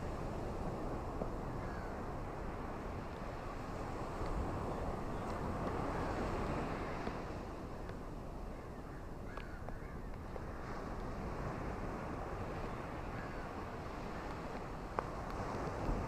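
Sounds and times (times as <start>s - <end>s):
wind: 0.0s - 16.0s.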